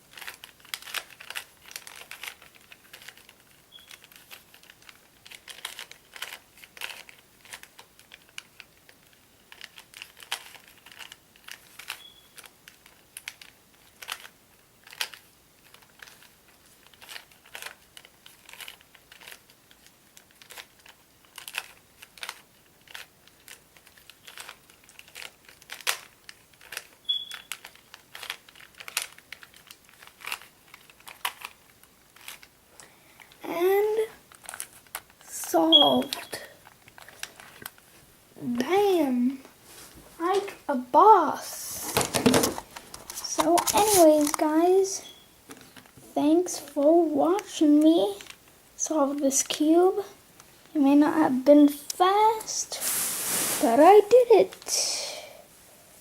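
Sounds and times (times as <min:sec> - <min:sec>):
puzzle cube plastic clicks: 0:00.1 - 0:37.8, 0:42.0 - 0:44.5.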